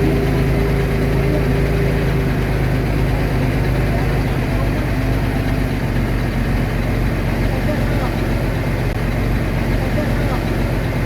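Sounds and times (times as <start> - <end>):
high steady tone: 0.0 - 5.5
heavy diesel engine running: 0.0 - 11.0.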